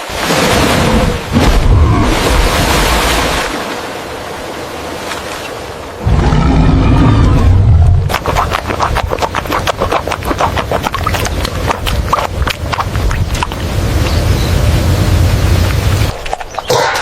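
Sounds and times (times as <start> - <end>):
elephant rumbling roar: 6.0 - 8.1.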